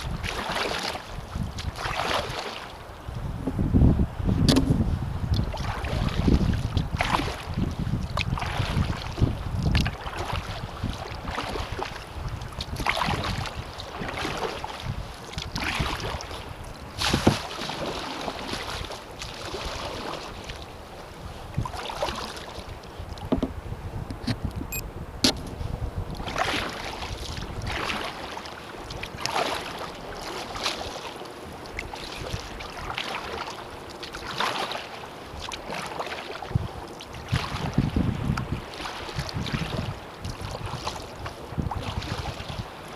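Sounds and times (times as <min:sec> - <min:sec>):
wind buffeting microphone: 0:00.0 - 0:00.4, 0:01.0 - 0:17.5, 0:21.1 - 0:28.0, 0:36.5 - 0:42.8
paddle splashing through water: 0:00.0 - 0:03.6, 0:04.4 - 0:23.6, 0:26.1 - 0:42.9.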